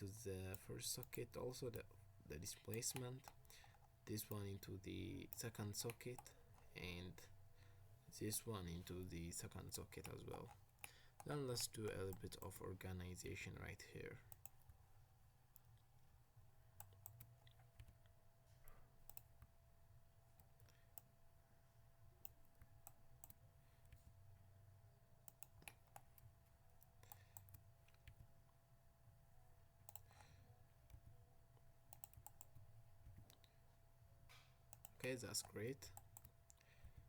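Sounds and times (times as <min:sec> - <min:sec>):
faint low hum: 0:00.0 - 0:37.0
computer mouse and key clicks: 0:00.5 - 0:06.8, 0:08.8 - 0:12.7, 0:14.3 - 0:14.8, 0:16.8 - 0:19.6, 0:20.4 - 0:21.2, 0:22.1 - 0:24.3, 0:25.2 - 0:28.6, 0:29.8 - 0:31.2, 0:31.9 - 0:33.6, 0:34.2 - 0:37.0.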